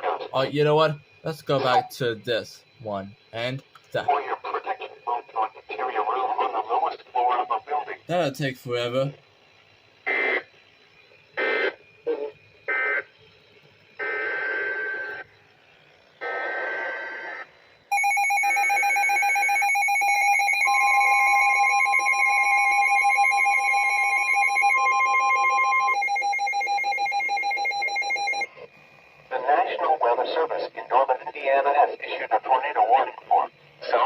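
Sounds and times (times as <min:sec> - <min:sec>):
harsh pulsing attention tone: 0:00.4 - 0:09.4, 0:16.2 - 0:28.5.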